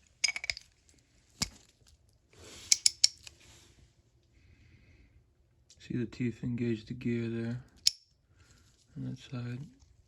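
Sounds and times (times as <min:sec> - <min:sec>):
small metal parts clicking: 0:02.7 - 0:03.3.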